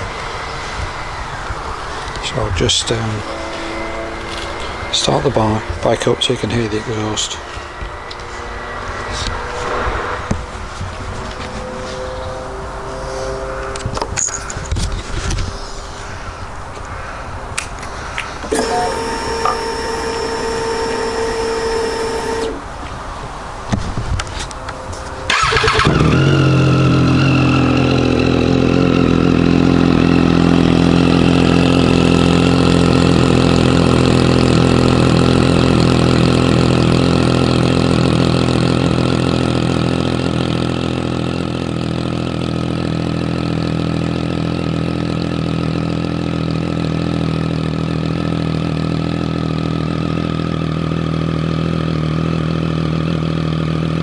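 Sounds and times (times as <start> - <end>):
steady whine: 0.0 - 23.6
motorcycle starter turning over: 18.5 - 22.6, 25.3 - 28.3
motorcycle engine idling: 18.5 - 22.8, 25.3 - 54.0.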